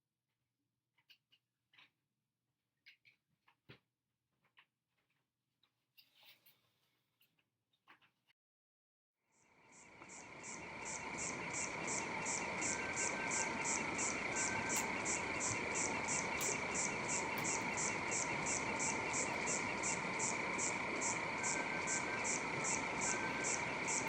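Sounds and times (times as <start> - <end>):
continuous trilling drone: 9.6 - 24.0
high pulsing call: 9.8 - 24.0.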